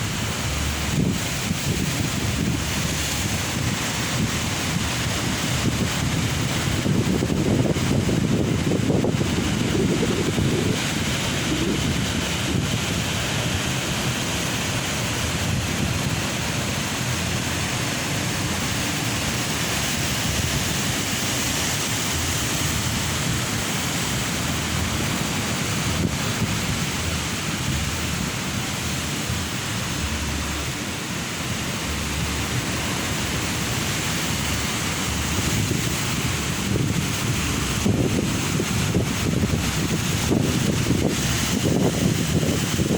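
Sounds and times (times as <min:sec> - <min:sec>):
ocean surf rushing: 0:00.0 - 0:42.9
wind buffeting microphone: 0:00.0 - 0:42.9.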